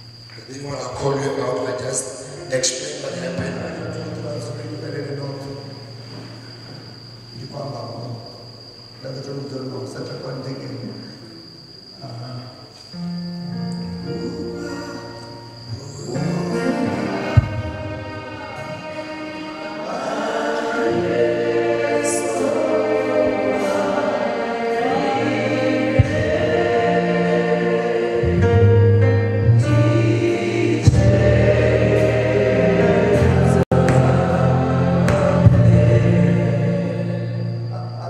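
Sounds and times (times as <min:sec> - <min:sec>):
gospel choir singing: 0:00.5 - 0:07.1, 0:14.0 - 0:38.0
instrumental backing with bass line: 0:21.0 - 0:37.7.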